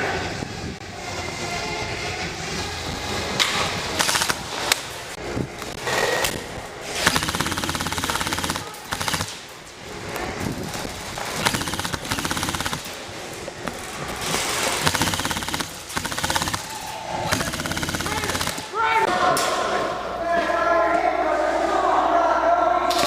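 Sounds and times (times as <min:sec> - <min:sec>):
airsoft guns firing full-auto: 0:04.0 - 0:04.6, 0:07.0 - 0:09.5, 0:11.2 - 0:13.0, 0:14.3 - 0:18.8.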